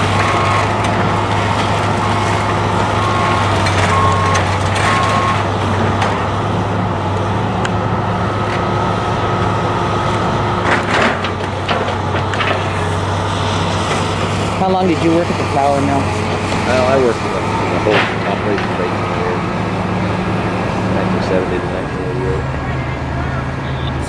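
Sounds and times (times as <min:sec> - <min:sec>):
heavy machinery diesel drone: 0:00.0 - 0:24.0
reversing alarm beeps: 0:00.2 - 0:00.8, 0:03.0 - 0:05.4, 0:23.6 - 0:24.0
cracking and crunching: 0:10.0 - 0:14.4.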